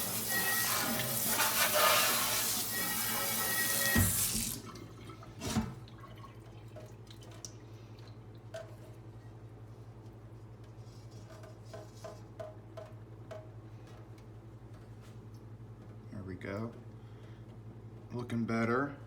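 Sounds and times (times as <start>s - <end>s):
tap water running into sink: 0.0s - 7.6s.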